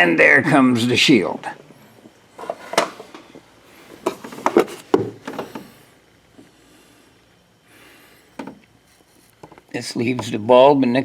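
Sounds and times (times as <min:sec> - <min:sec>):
plastic rubbing: 0:03.9 - 0:05.7
plastic clicks and knocks: 0:08.4 - 0:08.6.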